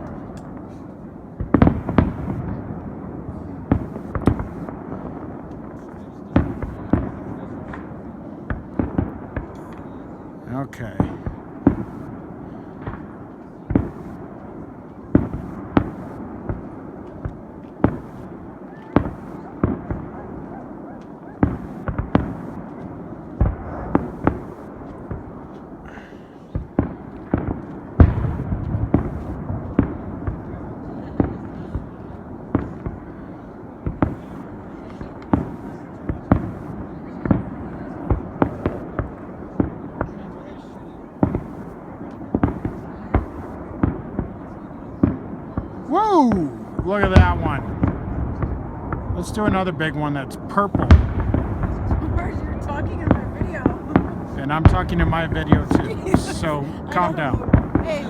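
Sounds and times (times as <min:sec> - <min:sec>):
small firework pops: 0:00.0 - 0:02.7, 0:03.7 - 0:04.8, 0:12.8 - 0:14.2, 0:15.1 - 0:33.1, 0:33.8 - 0:40.4, 0:41.2 - 0:45.8, 0:46.8 - 0:49.2, 0:50.8 - 0:52.3
fireworks booming: 0:00.0 - 0:10.0, 0:10.8 - 0:33.2, 0:33.8 - 0:40.1, 0:41.2 - 0:58.0.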